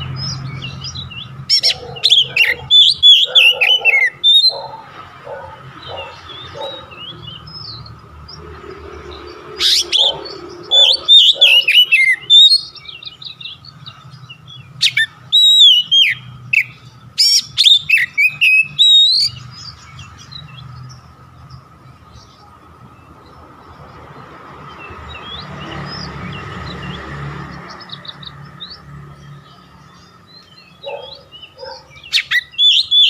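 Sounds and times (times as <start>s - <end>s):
bird singing whistled phrases: 14.8s - 19.4s.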